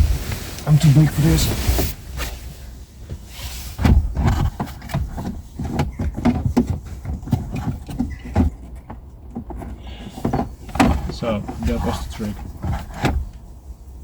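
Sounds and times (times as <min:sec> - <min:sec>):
hands rubbing plastic: 0:03.2 - 0:13.5.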